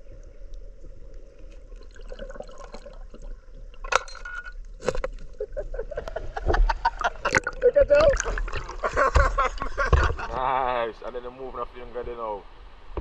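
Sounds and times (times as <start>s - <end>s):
river water splashing and trickling: 0.0s - 5.7s, 6.8s - 10.5s
sharp water splashes: 7.0s - 10.3s.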